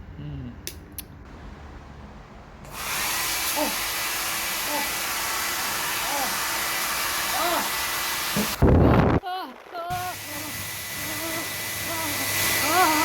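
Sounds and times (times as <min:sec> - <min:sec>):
hair dryer running: 0:02.6 - 0:09.1, 0:09.9 - 0:13.0.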